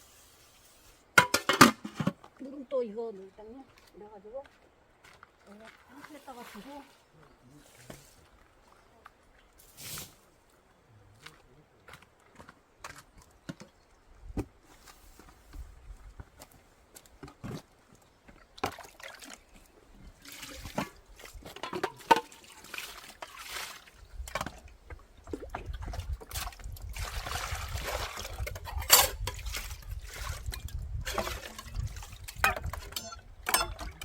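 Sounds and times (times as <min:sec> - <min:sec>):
water pouring and splashing: 0:05.9 - 0:07.0, 0:09.6 - 0:10.2, 0:18.3 - 0:34.0
vessels knocking and clattering: 0:20.6 - 0:22.5, 0:30.5 - 0:34.0.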